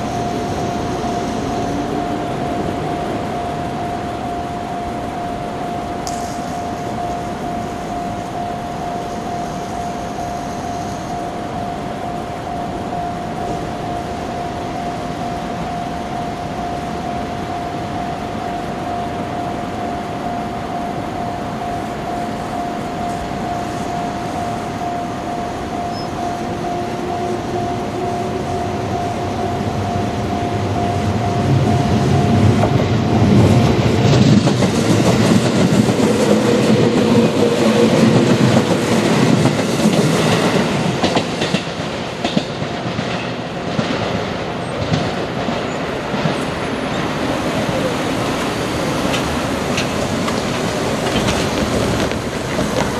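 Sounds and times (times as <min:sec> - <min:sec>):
level crossing warning bell: 0:00.0 - 0:52.9
train wheels clattering on rails: 0:25.8 - 0:52.9.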